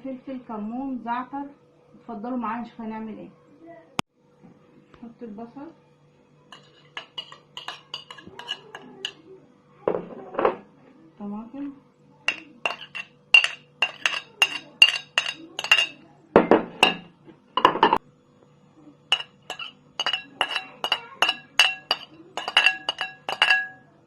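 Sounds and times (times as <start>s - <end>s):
spoon clinking on bowl rim: 6.5s - 9.2s, 12.3s - 16.0s, 16.8s - 17.1s, 19.1s - 23.8s
scraping: 6.6s - 9.2s, 12.3s - 16.0s, 19.1s - 23.8s.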